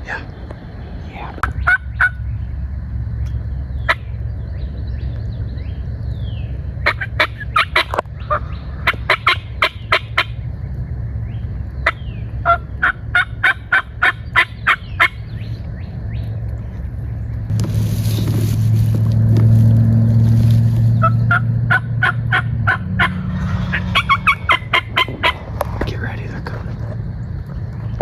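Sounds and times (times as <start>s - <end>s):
low rumble: 0.0s - 28.0s
turkey yelping: 1.4s - 2.2s, 11.8s - 15.2s, 20.9s - 25.4s.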